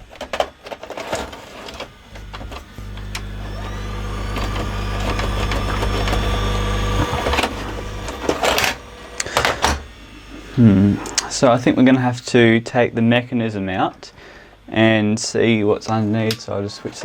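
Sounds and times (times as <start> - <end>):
tape mechanism clicks: 0.0 - 9.8
motor humming: 0.0 - 11.9
faint rising whine: 1.9 - 11.9.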